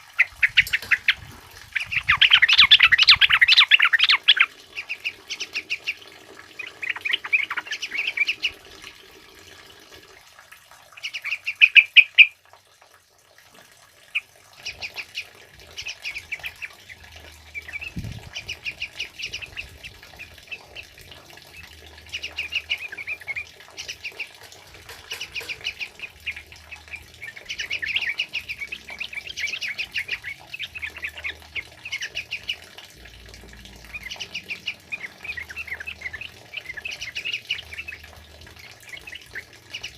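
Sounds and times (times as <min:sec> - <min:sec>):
bulbuls singing: 0:00.0 - 0:08.9, 0:11.0 - 0:12.3, 0:14.1 - 0:39.9.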